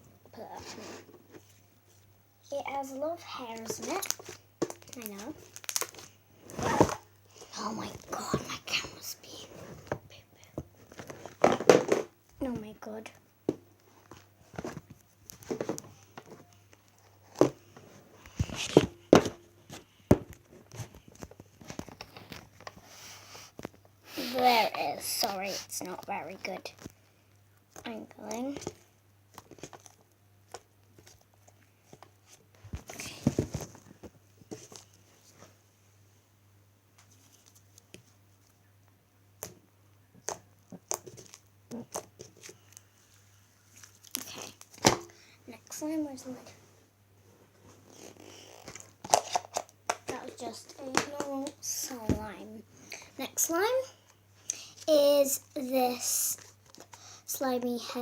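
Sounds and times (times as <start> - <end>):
faint low hum: 0.0 - 58.0
slime squishing: 3.2 - 8.8.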